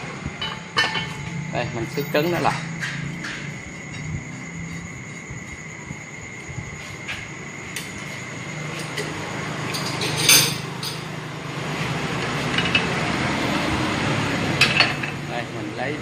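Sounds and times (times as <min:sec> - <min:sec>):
metal parts clinking and knocking: 0:09.7 - 0:11.1.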